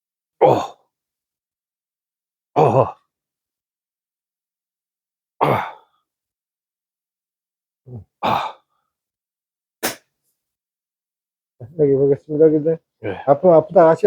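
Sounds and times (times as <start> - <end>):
person grunting: 0.4 - 0.8, 2.6 - 3.0, 5.4 - 5.8, 7.9 - 8.6, 13.0 - 13.3.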